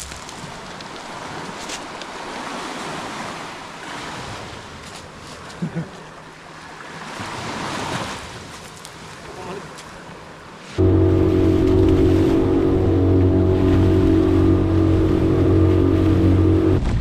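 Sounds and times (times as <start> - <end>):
sea waves washing ashore: 0.0 - 17.0.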